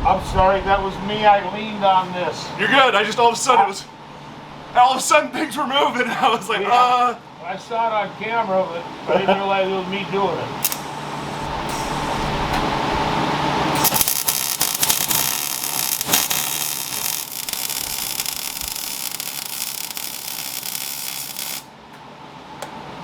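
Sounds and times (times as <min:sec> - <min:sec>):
arc welding crackling hiss: 0:10.6 - 0:21.8.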